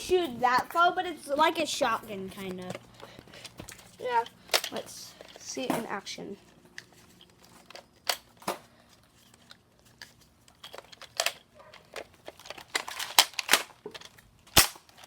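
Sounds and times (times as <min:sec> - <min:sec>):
plastic toy blaster clicks: 0:10.7 - 0:15.0.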